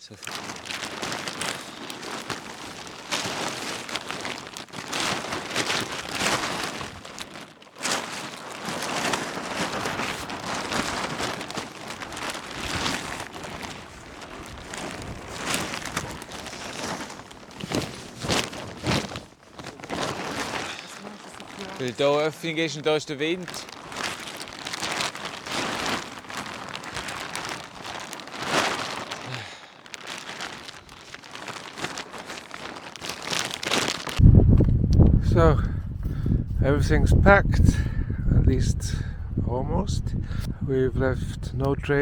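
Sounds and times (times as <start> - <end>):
fabric and bags rustling: 0.0 - 34.3.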